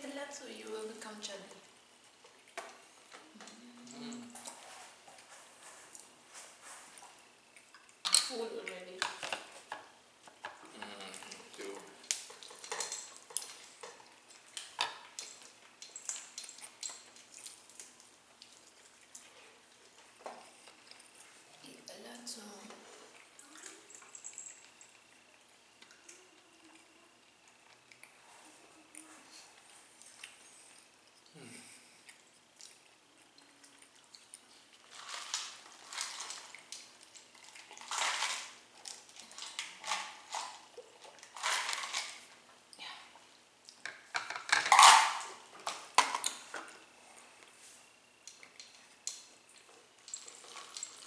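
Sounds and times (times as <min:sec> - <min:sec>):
chewing food: 0:01.6 - 0:21.7, 0:22.7 - 0:44.6, 0:45.3 - 0:51.0
food and dishes handling: 0:34.7 - 0:42.4, 0:43.9 - 0:46.8.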